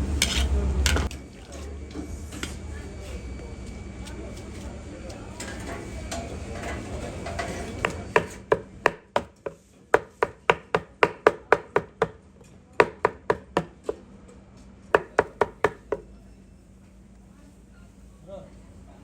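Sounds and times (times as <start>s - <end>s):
knife chopping on cutting board: 7.5s - 12.2s, 12.8s - 14.0s, 15.0s - 16.0s.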